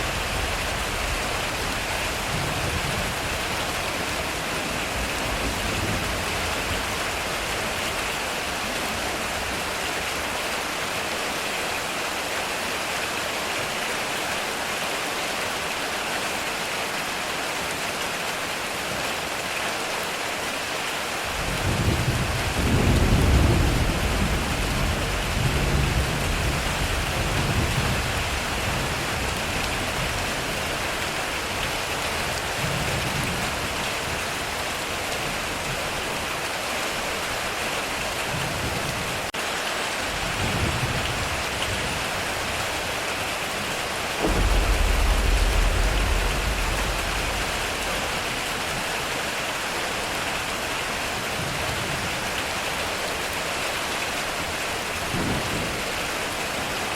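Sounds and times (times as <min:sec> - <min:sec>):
heavy rain on a metal roof: 0:00.0 - 0:56.9
thunder rumbling: 0:21.3 - 0:34.4, 0:40.1 - 0:52.1.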